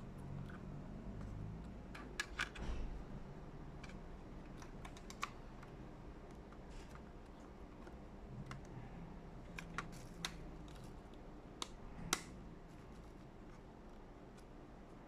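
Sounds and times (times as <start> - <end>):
light clicks of small parts: 3.8 - 8.8.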